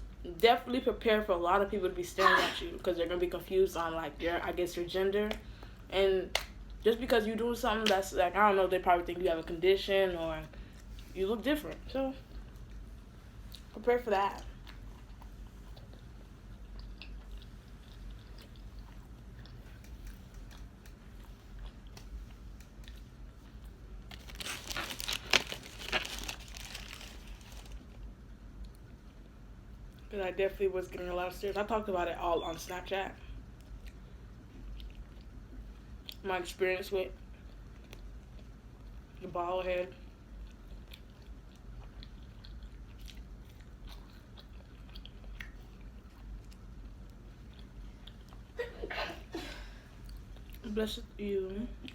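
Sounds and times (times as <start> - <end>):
steady low hum: 0.0 - 51.9
faint chewing clicks: 13.5 - 24.2, 40.4 - 48.4
paper packaging crinkling: 24.1 - 28.0
wet chewing mouth smacks: 41.8 - 46.4.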